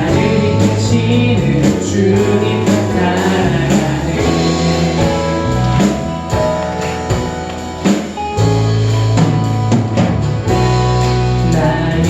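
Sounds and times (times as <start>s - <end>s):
people singing: 0.0s - 6.3s, 11.2s - 12.0s
drum kit beat: 0.0s - 12.0s
guitar: 0.0s - 12.0s.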